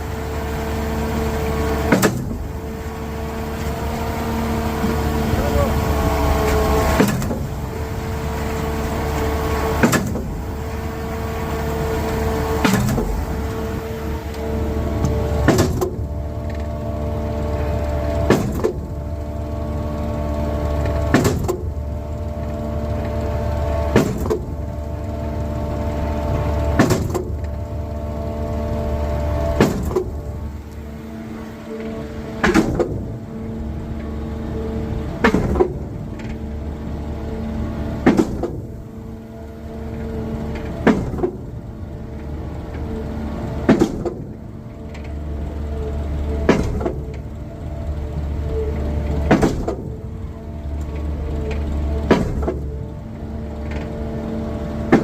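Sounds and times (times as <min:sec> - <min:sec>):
truck engine humming: 0:00.0 - 0:55.0.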